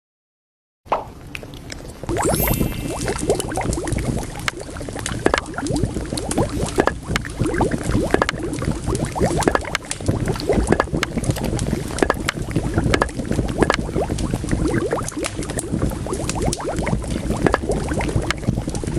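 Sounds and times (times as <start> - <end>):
liquid bubbling at the boil: 3.6 - 18.9.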